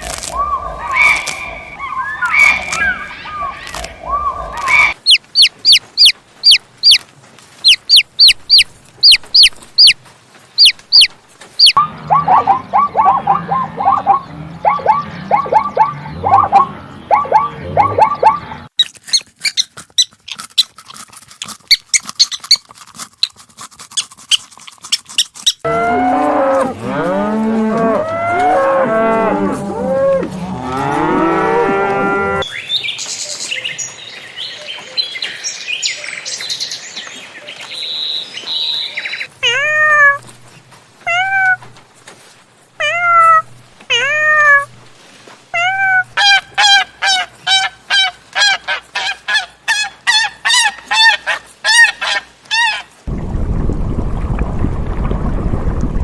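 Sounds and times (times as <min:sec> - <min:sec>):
high animal chirps: 0:00.4 - 0:07.0, 0:07.6 - 0:10.0, 0:10.6 - 0:20.4
animals calling over one another: 0:10.6 - 0:18.7
mid-pitched animal calls: 0:10.6 - 0:20.2, 0:39.4 - 0:40.3, 0:41.1 - 0:41.8, 0:42.8 - 0:44.8, 0:45.6 - 0:52.9
cattle mooing: 0:11.8 - 0:18.4, 0:25.7 - 0:32.4.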